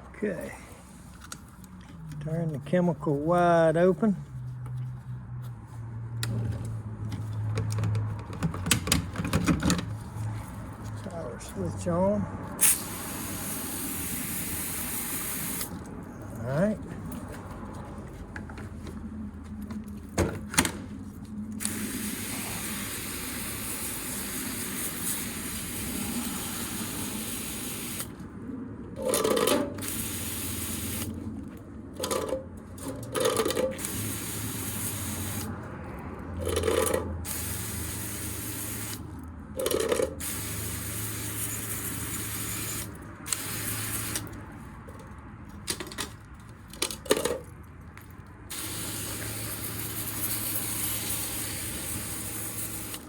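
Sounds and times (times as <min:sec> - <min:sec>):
sprayer hissing: 0:12.6 - 0:15.7, 0:21.6 - 0:28.1, 0:29.8 - 0:31.1, 0:33.8 - 0:35.5, 0:37.3 - 0:39.0, 0:40.2 - 0:44.3, 0:48.5 - 0:53.0.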